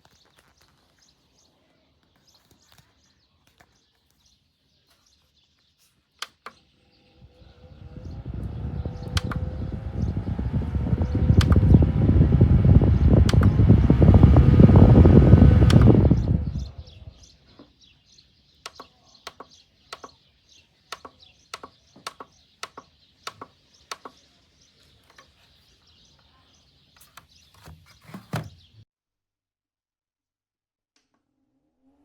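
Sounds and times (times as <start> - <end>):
fan blowing on microphone: 6.9 - 17.3.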